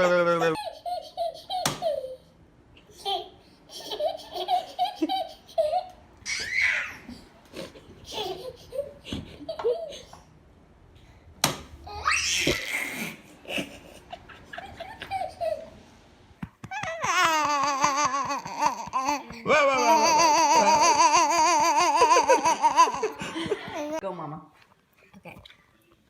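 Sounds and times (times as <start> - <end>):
baby laughing: 0.4 - 7.0, 7.6 - 10.2, 11.9 - 15.8, 16.7 - 24.0.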